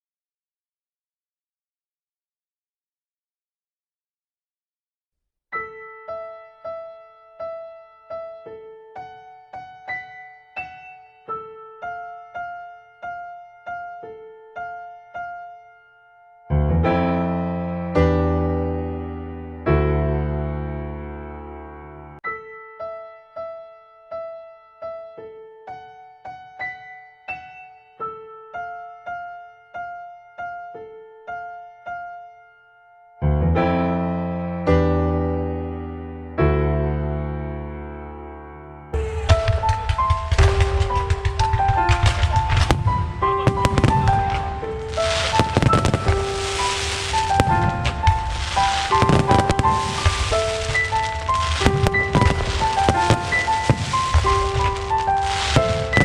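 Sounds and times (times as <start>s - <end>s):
keyboard playing slow melody: 5.6s - 26.2s, 26.9s - 39.1s, 42.5s - 56.0s
loud keyboard chord: 42.8s - 56.0s.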